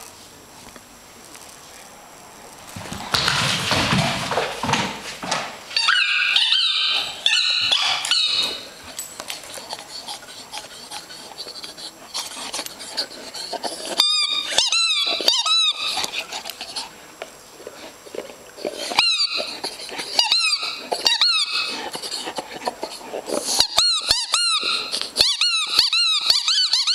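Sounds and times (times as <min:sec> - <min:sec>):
squeaky rubber ball squeaking: 0:23.6 - 0:26.9.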